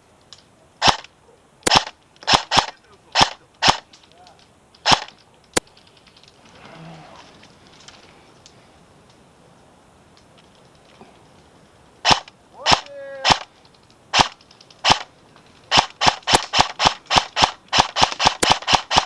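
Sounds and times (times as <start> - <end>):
airsoft rifle shots: 0.8 - 4.0, 4.8 - 5.7, 12.0 - 13.5, 14.1 - 15.1, 15.7 - 19.0.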